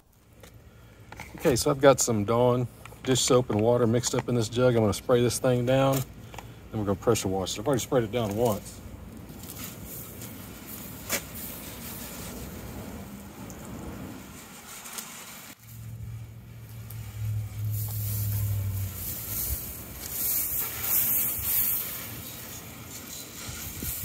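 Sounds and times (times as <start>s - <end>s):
pressure washer humming: 9.6s - 24.0s
water jet hissing: 9.6s - 24.0s.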